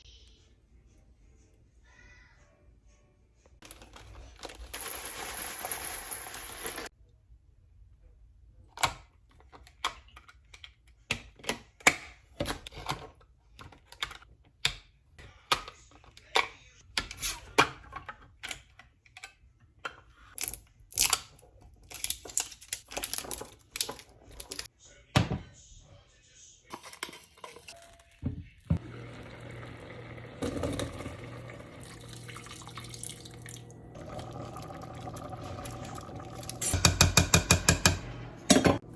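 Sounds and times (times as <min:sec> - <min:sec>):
utensils and cans knocking: 0:36.6 - 0:38.9.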